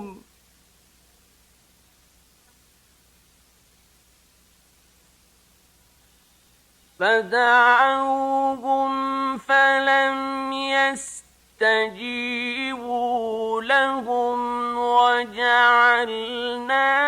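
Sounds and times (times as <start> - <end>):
man reciting melodically: 0.0 - 0.3, 7.0 - 17.0.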